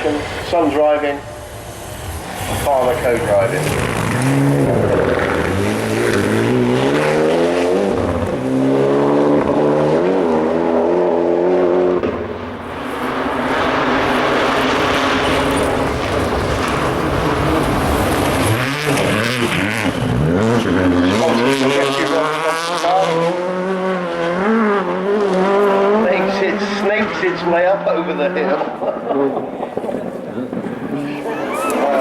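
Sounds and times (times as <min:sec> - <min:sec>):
rally car engine revving: 0:00.0 - 0:32.0
rushing noise: 0:11.1 - 0:20.8.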